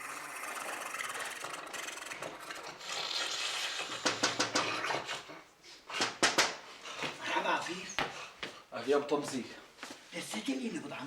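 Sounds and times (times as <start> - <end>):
sharp knocks or clacks: 4.0 - 4.7, 6.0 - 6.6.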